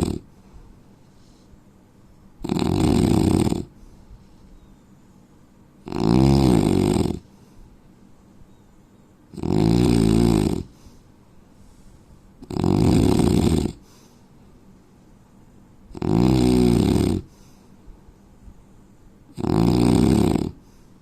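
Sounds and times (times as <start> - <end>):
man snoring: 0.0 - 0.3, 2.4 - 3.7, 5.8 - 7.3, 9.4 - 10.7, 12.4 - 13.8, 15.9 - 17.3, 19.4 - 20.6.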